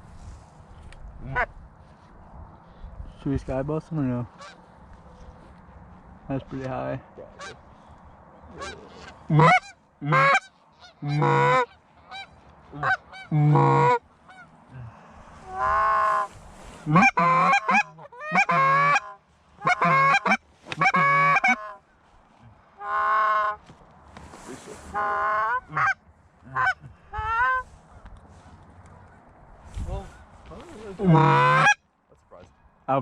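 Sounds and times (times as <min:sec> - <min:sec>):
geese honking: 0:01.2 - 0:01.6, 0:04.3 - 0:05.0, 0:07.3 - 0:14.6, 0:15.3 - 0:22.0, 0:22.6 - 0:23.7, 0:24.7 - 0:29.2, 0:31.0 - 0:31.8.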